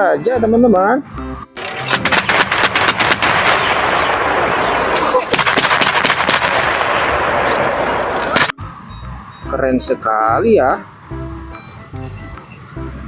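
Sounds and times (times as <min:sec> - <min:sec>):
toy explosion noise: 0:01.6 - 0:08.6
toy rapid gunfire effect: 0:01.6 - 0:08.6.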